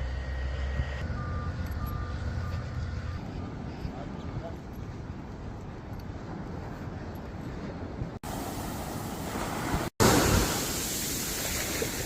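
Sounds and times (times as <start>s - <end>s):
ocean surf washing onto beach: 8.2s - 12.0s.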